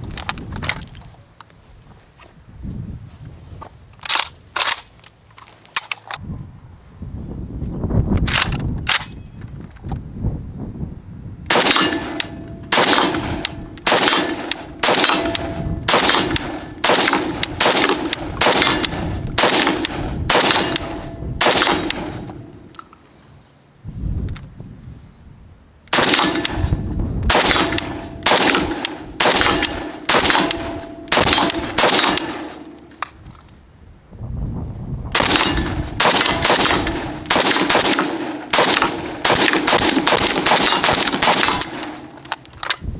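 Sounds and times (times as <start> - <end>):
rifle shots: 11.5 - 22.8, 25.9 - 33.0, 35.2 - 42.6.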